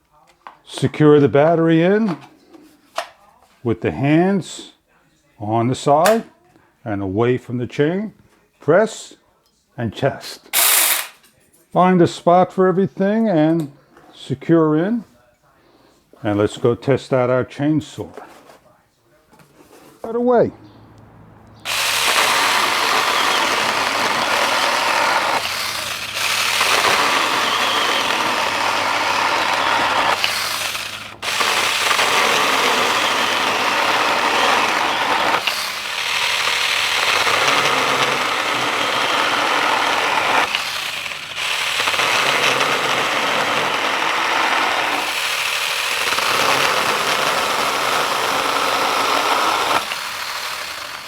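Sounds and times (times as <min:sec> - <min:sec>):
mini chainsaw running: 0:10.6 - 0:11.2, 0:21.6 - 0:51.0.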